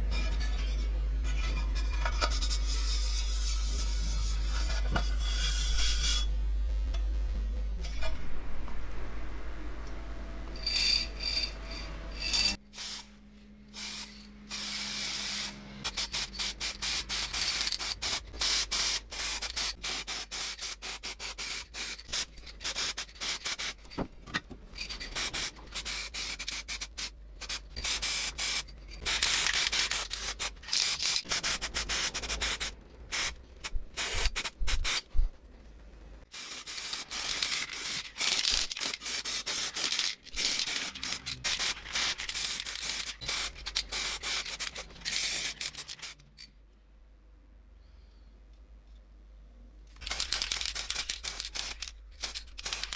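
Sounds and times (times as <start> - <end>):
sandpaper rubbing: 2.2 - 6.3, 13.8 - 24.0, 25.0 - 33.4, 36.4 - 46.2.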